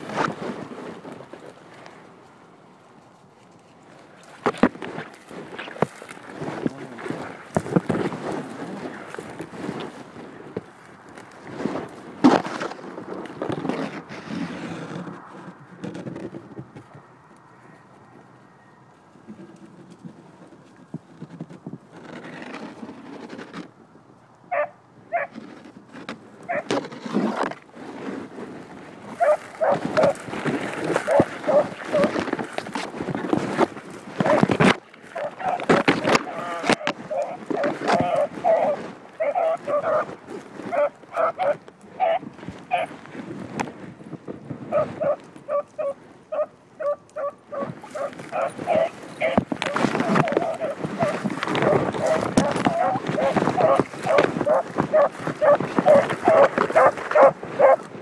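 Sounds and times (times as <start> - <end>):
dog barking: 24.5 - 25.3, 31.1 - 32.1, 38.1 - 40.0, 40.8 - 42.9, 44.7 - 47.3, 48.0 - 49.4, 52.0 - 57.8
dog growling: 31.1 - 32.1, 38.0 - 40.1, 48.0 - 57.8.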